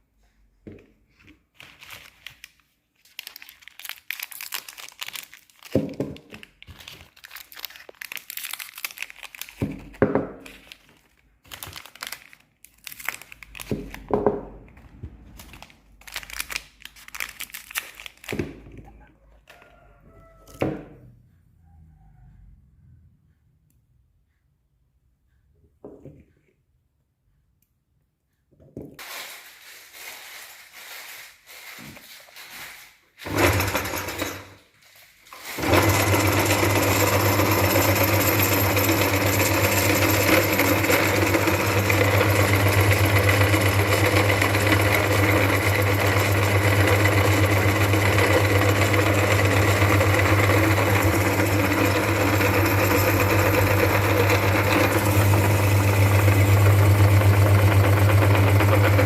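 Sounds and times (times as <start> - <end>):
meat grinder motor humming: 33.3 - 34.4, 35.6 - 59.0.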